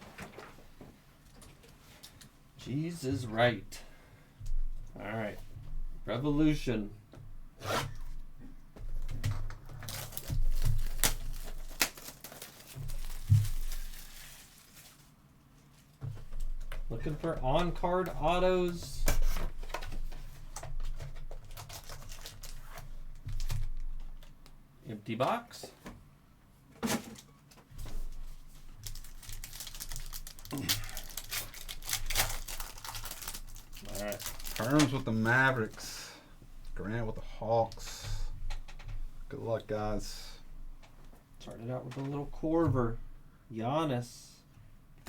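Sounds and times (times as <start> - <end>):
wrappers tearing and crinkling: 9.7 - 15.9, 21.4 - 23.7, 28.1 - 35.8.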